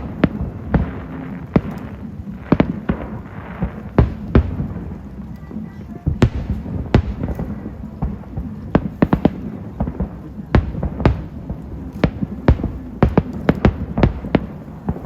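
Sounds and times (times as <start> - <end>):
sharp firework bangs: 0.0 - 5.0, 5.9 - 15.0
low rumble of distant fireworks: 0.0 - 15.0.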